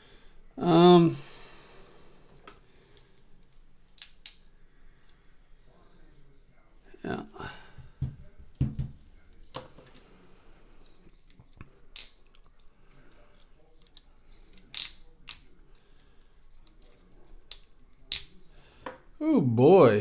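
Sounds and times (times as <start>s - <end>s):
metal tools clicking on lock: 13.4s - 15.5s.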